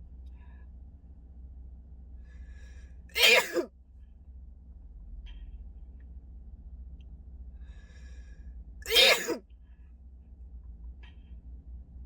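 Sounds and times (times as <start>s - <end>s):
woman sneezing: 3.2s - 3.7s, 8.9s - 9.4s.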